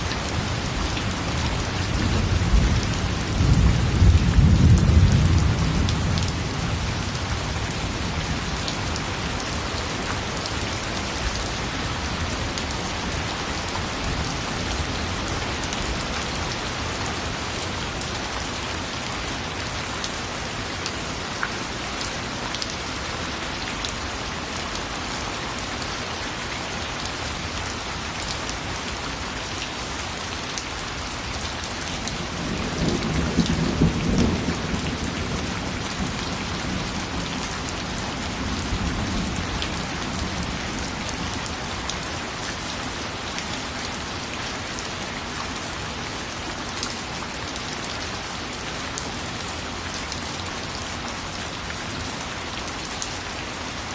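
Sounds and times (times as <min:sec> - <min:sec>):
steady rain falling: 0:00.0 - 0:53.9
low thunder rumble: 0:02.1 - 0:07.1.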